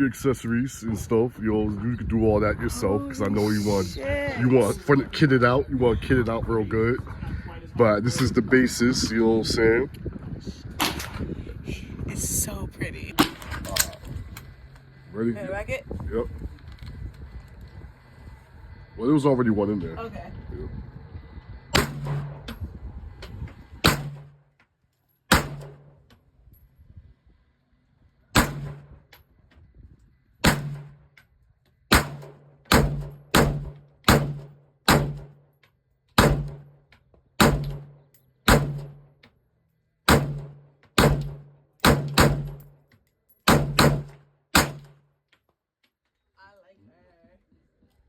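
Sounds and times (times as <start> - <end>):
pistol gunshots: 21.7 - 22.5, 23.8 - 24.4, 25.3 - 25.9, 28.3 - 28.9, 30.4 - 31.0, 31.9 - 35.3, 36.2 - 36.7, 37.4 - 39.0, 40.1 - 42.6, 43.5 - 45.0.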